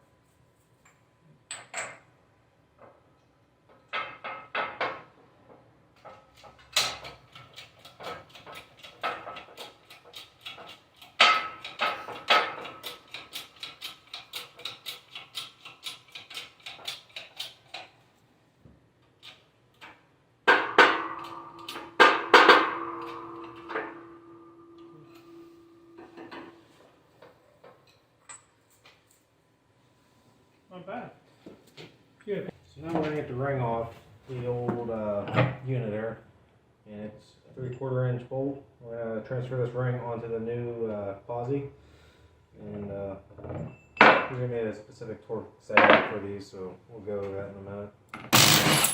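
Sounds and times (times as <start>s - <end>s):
hammer striking metal: 48.4s - 48.9s.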